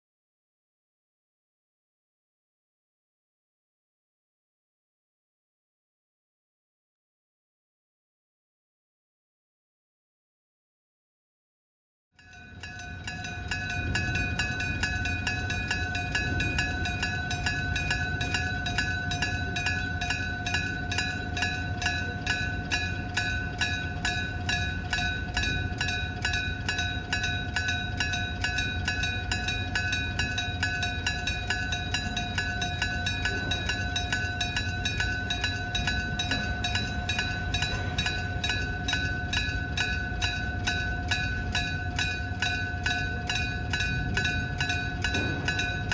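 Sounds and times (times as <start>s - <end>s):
level crossing bell ringing: 12.2s - 45.9s.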